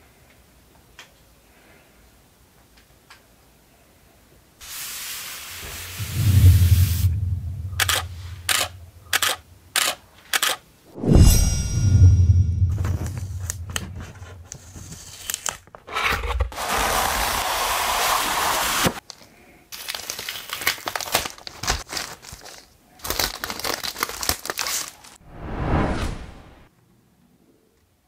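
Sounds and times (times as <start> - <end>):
packaging crinkling and rustling: 14.4 - 16.5, 19.0 - 25.2
packaging tearing: 19.1 - 25.2.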